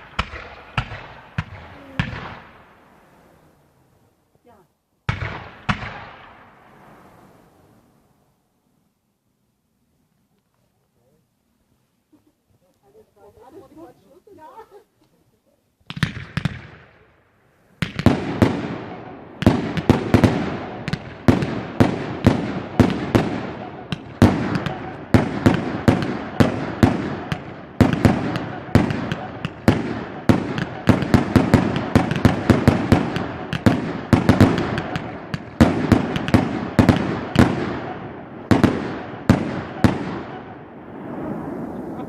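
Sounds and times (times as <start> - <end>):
fireworks bangs: 0.0 - 3.2, 5.1 - 7.9, 15.8 - 42.0.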